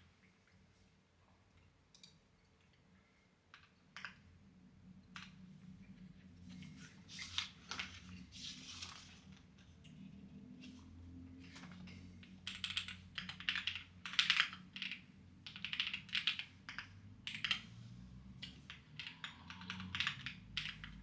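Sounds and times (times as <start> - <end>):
small clicks: 1.9 - 2.8.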